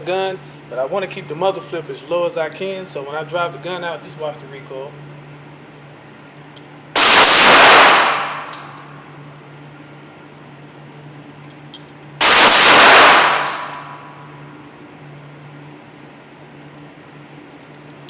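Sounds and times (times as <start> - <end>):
pistol shots with echo: 7.0 - 8.8, 12.2 - 14.1.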